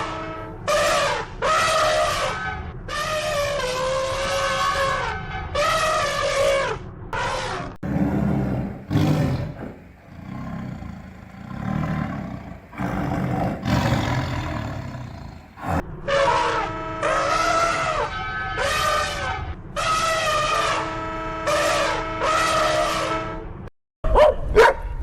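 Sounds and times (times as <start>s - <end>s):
animal roaring: 3.0s - 19.4s.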